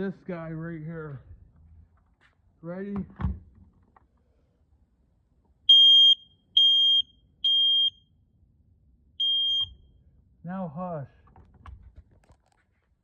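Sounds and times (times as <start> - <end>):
smoke alarm beeping: 5.7 - 8.1, 9.2 - 9.9.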